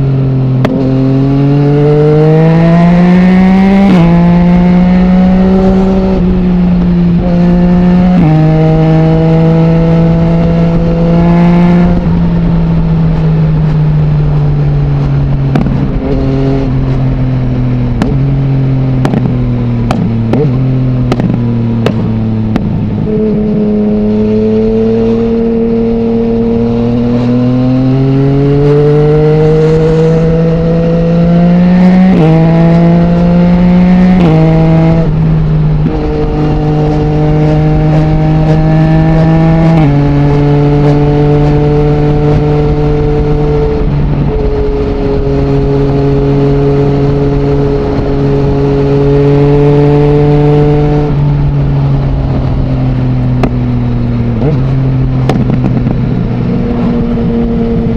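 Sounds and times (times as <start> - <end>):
motorcycle engine revving: 0.0 - 57.9.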